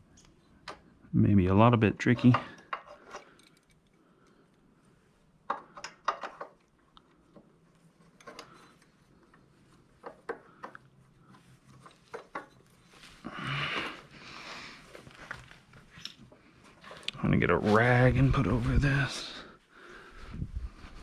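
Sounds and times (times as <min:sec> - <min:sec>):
metal parts clinking: 0:02.0 - 0:04.0.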